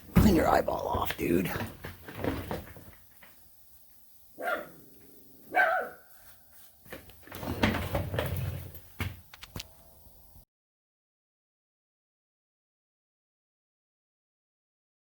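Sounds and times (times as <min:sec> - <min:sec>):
dog barking: 0:04.4 - 0:04.9, 0:05.5 - 0:06.1.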